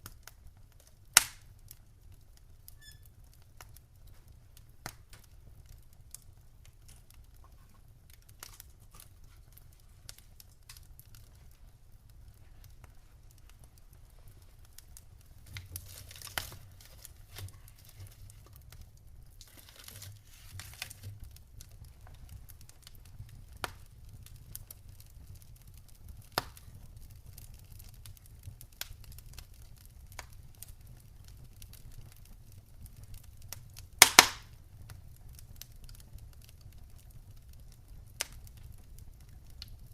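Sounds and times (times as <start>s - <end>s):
campfire crackling: 0.0s - 39.9s.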